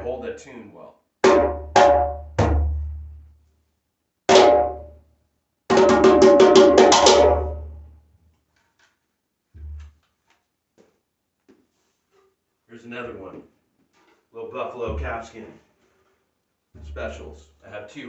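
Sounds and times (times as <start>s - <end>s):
djembe played by hand: 1.3s - 2.7s, 5.7s - 7.7s, 16.8s - 17.2s.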